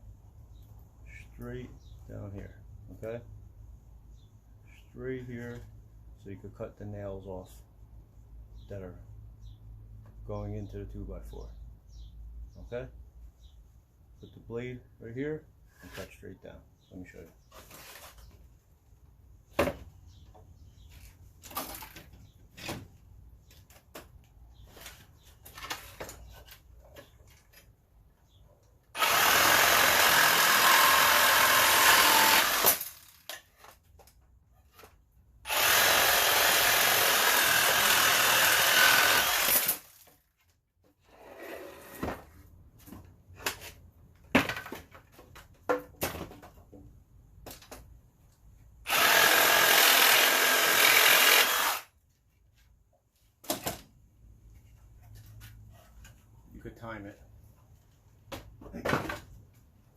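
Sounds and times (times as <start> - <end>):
reciprocating saw cutting wood: 29.0 - 33.2, 35.5 - 39.9, 48.9 - 51.9.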